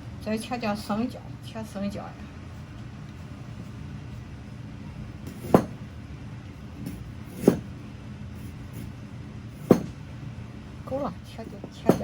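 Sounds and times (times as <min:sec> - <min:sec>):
low steady hum: 0:00.0 - 0:12.0
knife knocking on chopping board: 0:05.4 - 0:05.8, 0:09.6 - 0:10.0.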